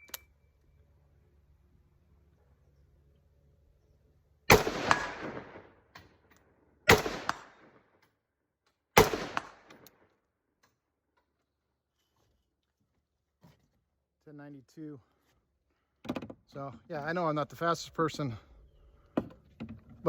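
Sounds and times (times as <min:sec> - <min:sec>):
rifle shots with echo: 0:04.5 - 0:05.8, 0:06.9 - 0:07.8, 0:09.0 - 0:09.9.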